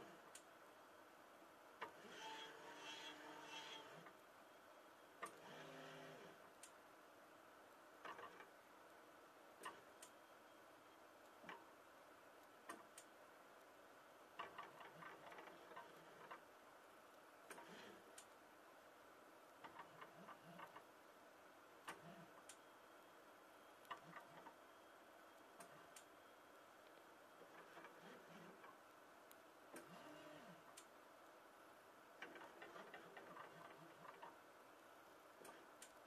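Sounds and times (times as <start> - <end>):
low steady hum: 0.0 - 36.0
faint sharp clicks: 21.8 - 22.6.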